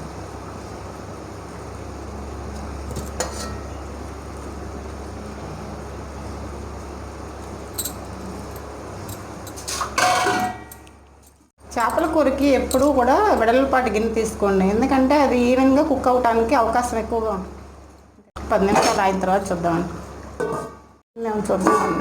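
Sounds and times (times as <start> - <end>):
pot cooking with rumbling hiss: 0.0 - 22.0
cookware clatter: 2.9 - 3.7, 9.5 - 10.9, 18.7 - 19.2, 20.4 - 20.9, 21.6 - 22.0
utensils clinking: 7.7 - 13.4.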